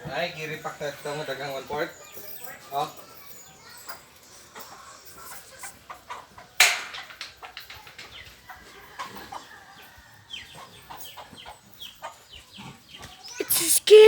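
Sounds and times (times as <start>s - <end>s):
chickens clucking: 3.5s - 14.0s.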